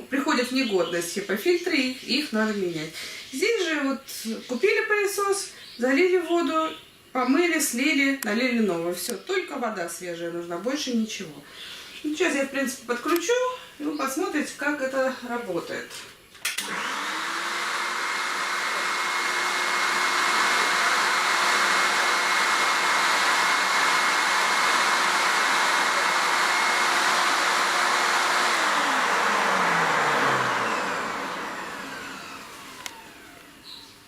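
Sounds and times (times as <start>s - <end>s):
vacuum cleaner motor whining: 16.5s - 34.0s.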